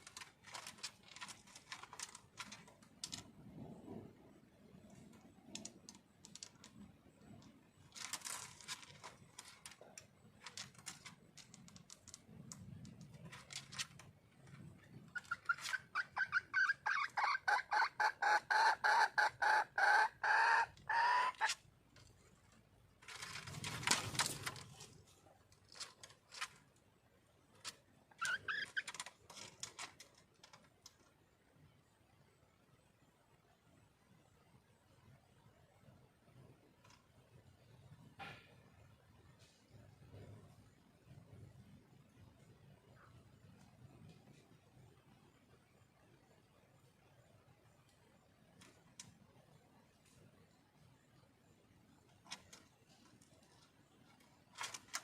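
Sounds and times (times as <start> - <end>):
rustling noise: 0.0 - 16.0, 21.5 - 26.8, 27.5 - 31.1, 52.1 - 55.0
scattered clicks: 4.9 - 14.6
hen clucking rapidly: 14.8 - 21.6.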